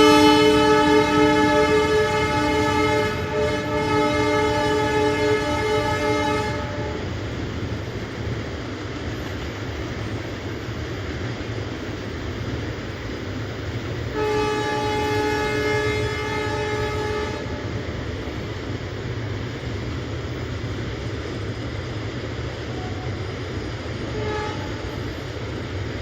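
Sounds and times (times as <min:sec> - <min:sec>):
train horn blast: 0:00.0 - 0:07.2, 0:14.1 - 0:17.8, 0:22.7 - 0:23.2, 0:24.0 - 0:25.1
train low rumble: 0:00.0 - 0:26.0.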